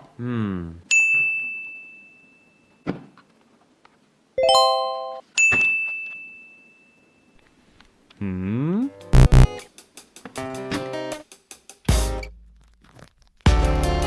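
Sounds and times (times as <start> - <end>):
high bell-like ding: 4.4 - 7.3.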